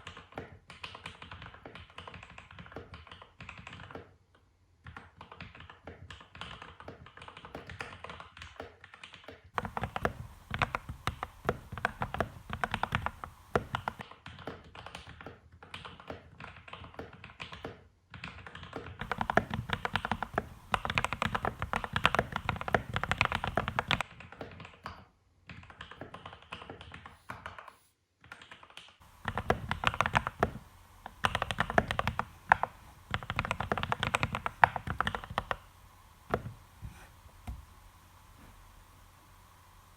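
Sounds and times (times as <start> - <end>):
mechanical keyboard typing: 4.9 - 14.0, 15.7 - 24.8, 25.5 - 36.7.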